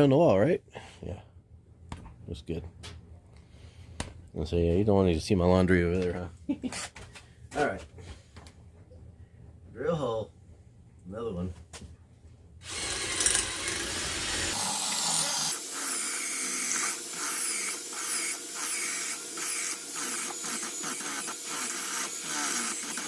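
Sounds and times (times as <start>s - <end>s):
electric drill boring into wall: 12.6s - 23.0s.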